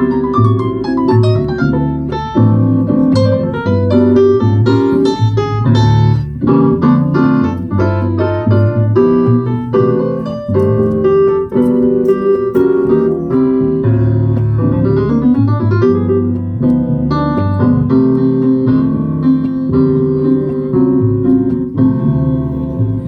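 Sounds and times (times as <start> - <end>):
jazz piano playing: 0.0 - 23.0.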